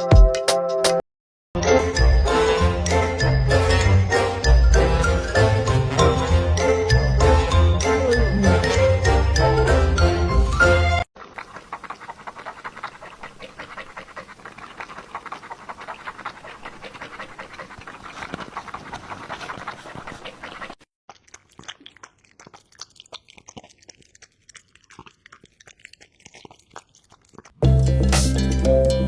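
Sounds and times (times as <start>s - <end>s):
cat lapping milk: 11.2s - 27.6s.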